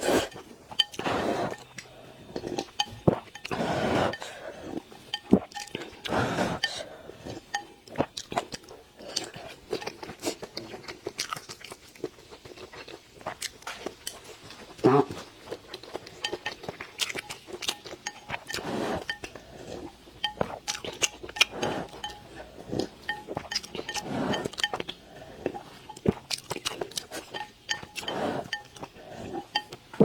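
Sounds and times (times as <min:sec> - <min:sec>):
chewing: 0:00.0 - 0:30.0
utensils clinking against dishes: 0:00.1 - 0:01.8, 0:02.5 - 0:04.4, 0:16.1 - 0:19.4, 0:20.2 - 0:30.0.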